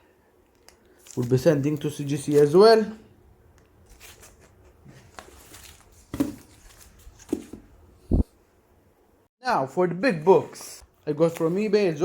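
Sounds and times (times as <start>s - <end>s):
plastic sleeves rustling: 0.5s - 2.7s, 3.8s - 8.2s.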